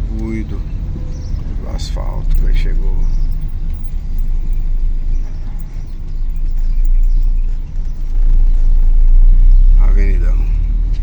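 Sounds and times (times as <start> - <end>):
moving car rumble: 0.0 - 11.0.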